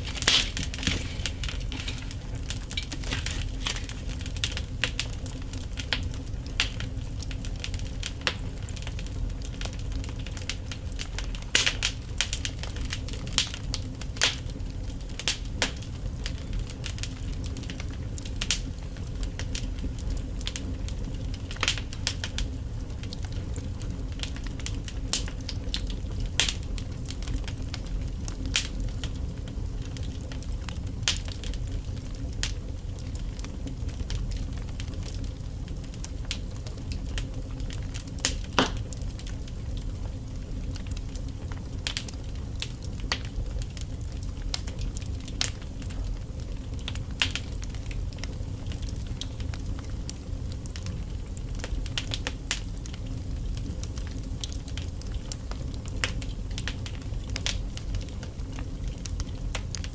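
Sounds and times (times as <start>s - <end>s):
logs crackling in a fireplace: 0.0s - 59.9s
low fire rumble: 0.0s - 59.9s
sharp pops and snaps: 38.5s - 38.8s.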